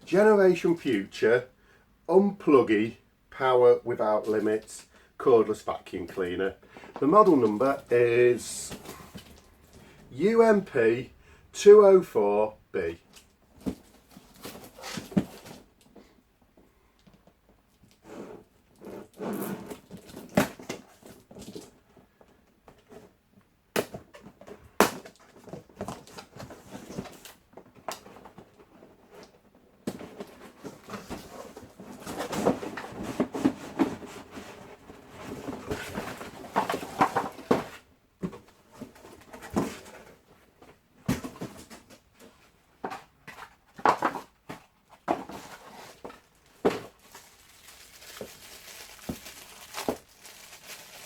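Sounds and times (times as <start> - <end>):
knocks and clicks of packaging: 13.1 - 16.0, 19.0 - 23.1, 23.7 - 47.4, 48.1 - 50.6
packaging rustling: 45.0 - 51.0.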